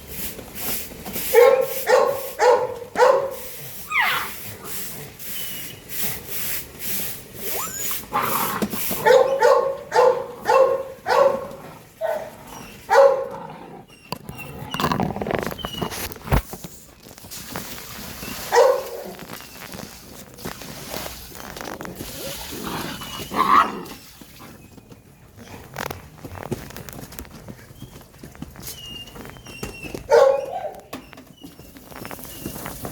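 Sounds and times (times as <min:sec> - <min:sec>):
puppies barking high yaps: 0:01.3 - 0:04.4, 0:07.4 - 0:13.4, 0:18.4 - 0:19.3, 0:29.6 - 0:31.2
puppy rising whine: 0:07.4 - 0:08.6.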